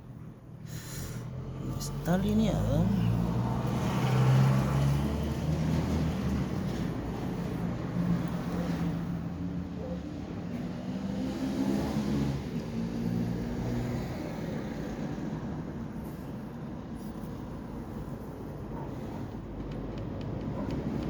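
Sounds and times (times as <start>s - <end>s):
passing vehicle engine accelerating: 1.2s - 9.3s, 10.6s - 15.9s.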